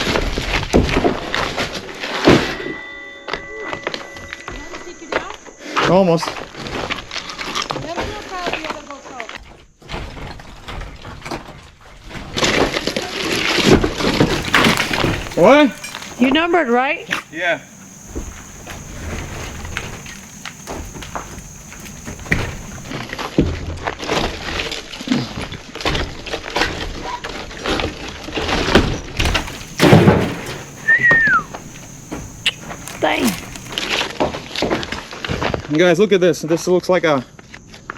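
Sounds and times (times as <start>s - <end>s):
log grinding and scraping: 14.2s - 22.9s, 29.2s - 33.8s
wooden timbers cracking and knocking: 14.2s - 22.9s, 29.2s - 33.8s
heavy log thud: 14.3s - 22.9s, 29.2s - 33.8s.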